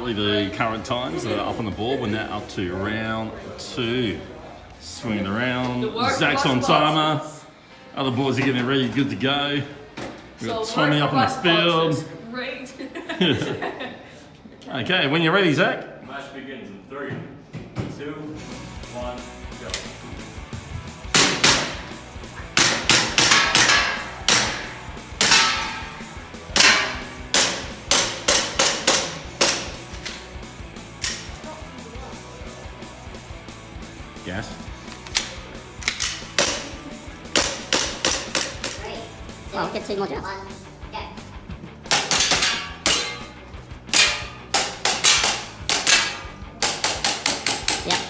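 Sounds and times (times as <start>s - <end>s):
gas pistol shots: 21.2s - 30.4s, 31.0s - 31.4s, 35.0s - 38.8s, 41.9s - 48.0s.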